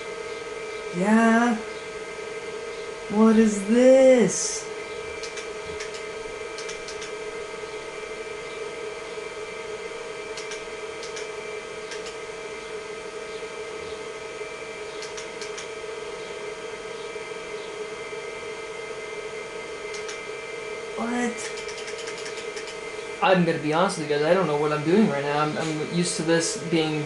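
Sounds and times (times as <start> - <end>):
computer fan and hard drive whine: 0.0 - 27.0
keyboard key clicks: 6.6 - 7.1, 21.4 - 22.8.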